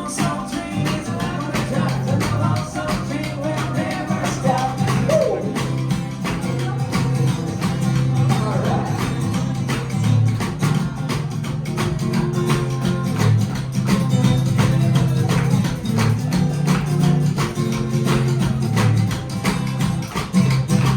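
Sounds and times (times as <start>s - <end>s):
bass line: 0.0s - 20.9s
drum beat: 0.0s - 20.9s.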